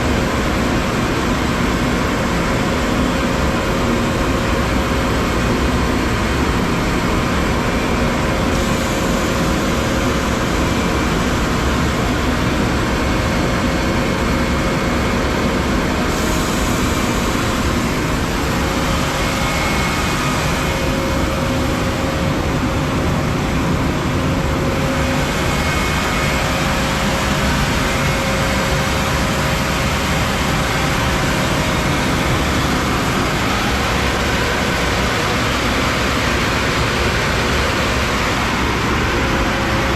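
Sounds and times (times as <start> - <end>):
belt sander running: 16.1 - 22.9, 24.0 - 36.5.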